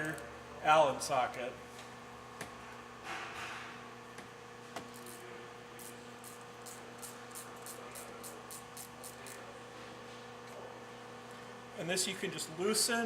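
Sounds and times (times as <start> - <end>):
ratchet clicking: 5.8 - 9.4.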